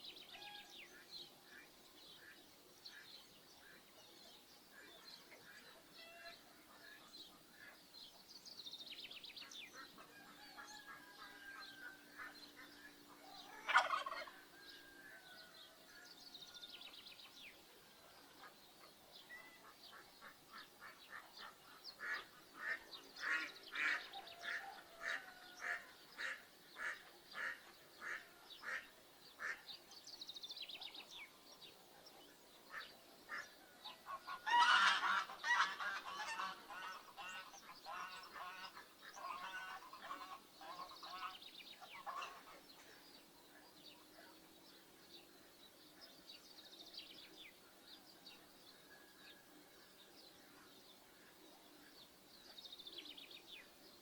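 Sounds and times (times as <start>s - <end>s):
small birds chirping: 0.0s - 14.4s, 15.2s - 54.0s
poultry calling: 4.8s - 7.8s, 9.7s - 16.6s, 19.4s - 29.7s, 32.7s - 42.6s
geese honking: 34.1s - 42.5s.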